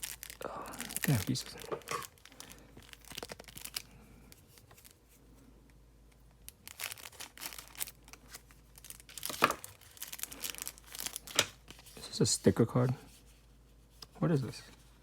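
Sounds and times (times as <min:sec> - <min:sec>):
card packaging crinkling: 0:00.0 - 0:05.0, 0:06.4 - 0:12.9.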